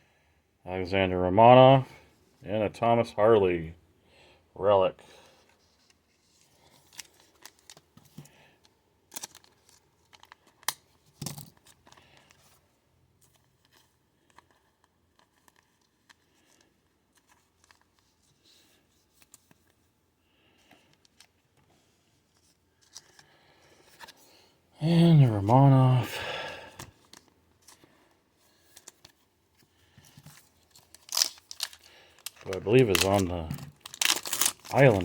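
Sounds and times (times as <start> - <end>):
wrapper rustling: 28.5 - 35.0.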